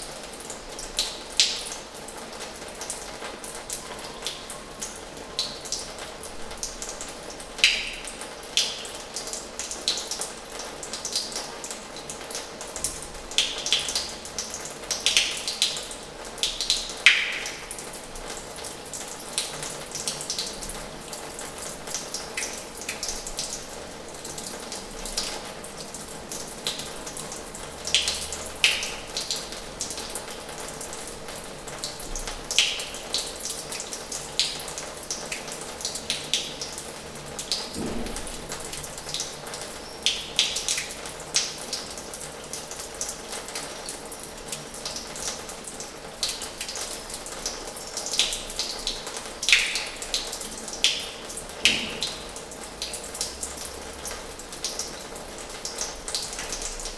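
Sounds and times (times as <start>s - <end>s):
water drips: 0.0s - 56.9s
tap water splashing into basin: 16.5s - 17.9s, 37.5s - 41.6s, 49.2s - 53.5s.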